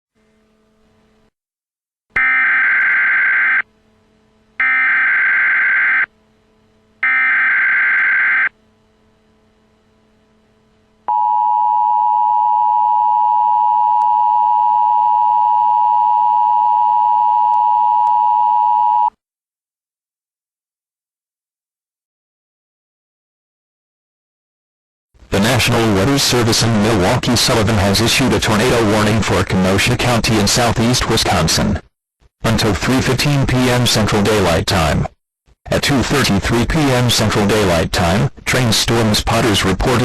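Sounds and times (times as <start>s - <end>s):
screeching digital header bursts: 2.2s - 3.6s, 4.6s - 6.1s, 7.0s - 8.5s
steady attention tone: 2.2s - 19.1s.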